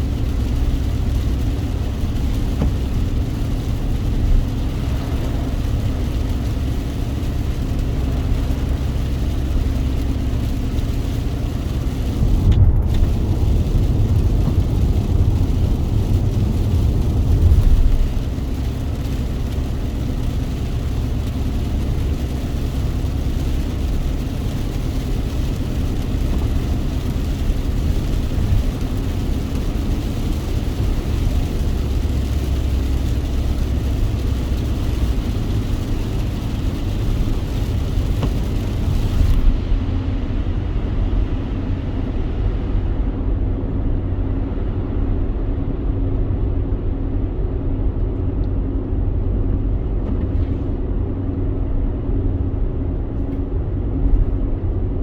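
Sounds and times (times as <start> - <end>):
rain hiss: 0.0 - 43.3
car road rumble: 0.0 - 55.0.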